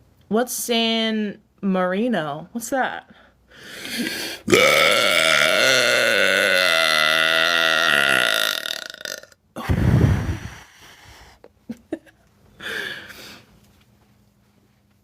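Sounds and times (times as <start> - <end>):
woman belching: 4.5 - 9.4.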